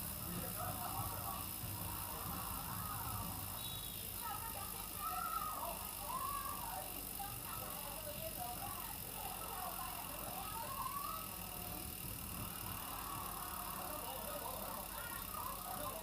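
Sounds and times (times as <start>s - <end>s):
bicycle running noise: 0.0s - 16.0s.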